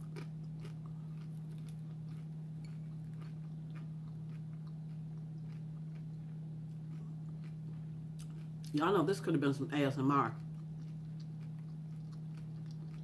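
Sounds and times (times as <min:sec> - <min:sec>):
person chewing crunchy food: 0:00.0 - 0:08.8, 0:10.3 - 0:13.0
steady low hum: 0:00.0 - 0:13.0.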